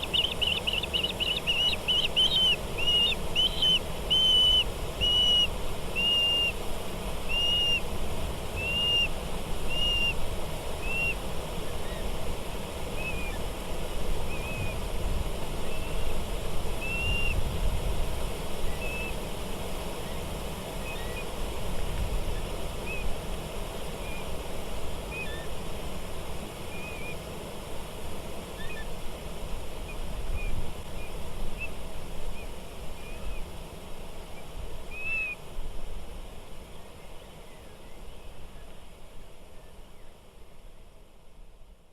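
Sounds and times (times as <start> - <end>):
bird whistled note: 0.0 - 6.5.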